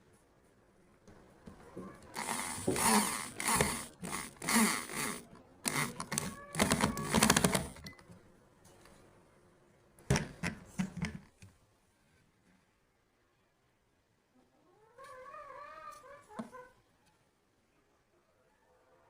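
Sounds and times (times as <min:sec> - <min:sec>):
tool clicking and scraping on wood: 0:02.0 - 0:07.9.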